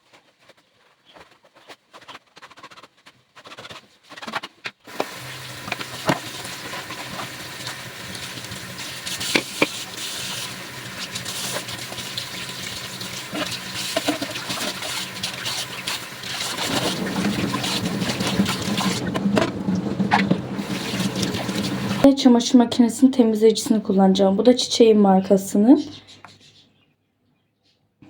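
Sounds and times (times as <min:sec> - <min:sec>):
tap running into sink: 0:04.9 - 0:22.0.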